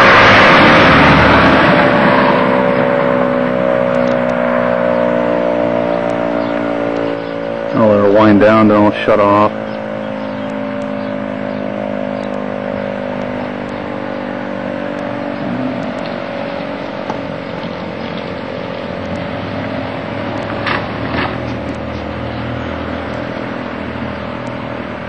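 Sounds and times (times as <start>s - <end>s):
air raid siren winding down: 0.0s - 25.0s.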